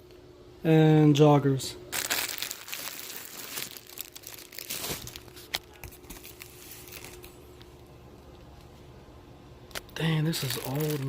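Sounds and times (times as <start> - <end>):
packaging crinkling: 1.9 - 7.7, 9.7 - 11.0.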